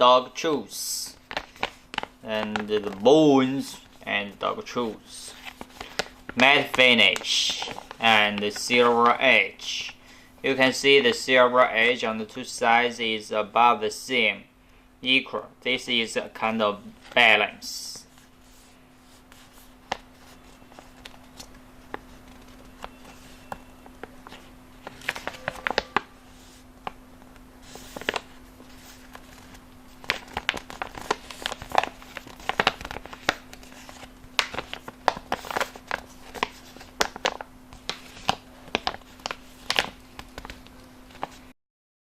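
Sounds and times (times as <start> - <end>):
plastic bag crinkling: 4.6 - 9.2, 19.1 - 26.9, 27.6 - 41.5.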